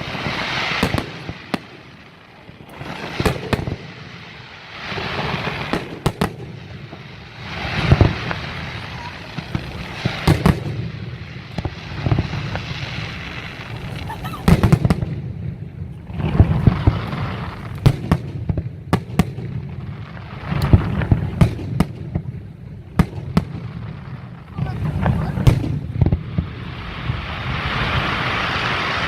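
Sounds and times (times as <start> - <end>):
fireworks crackle and rumble: 0.0 - 29.0.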